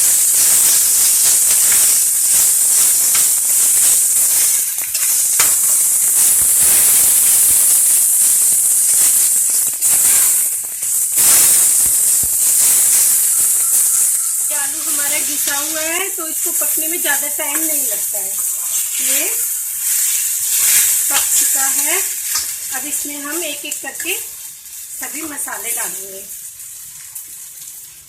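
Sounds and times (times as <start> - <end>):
food sizzling in oil: 0.0 - 28.0.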